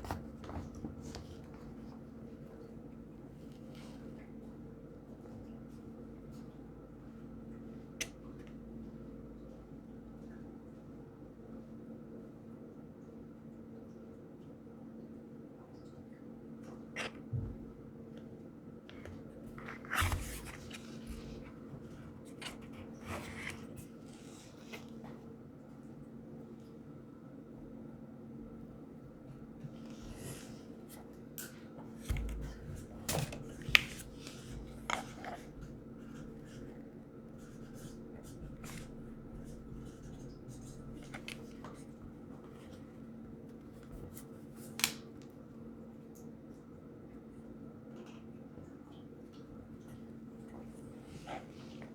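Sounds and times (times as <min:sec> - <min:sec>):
low electrical hum: 0:00.0 - 0:51.9
scrapes and light knocks: 0:18.9 - 0:25.2, 0:29.7 - 0:36.8
steady low hum: 0:27.0 - 0:44.0.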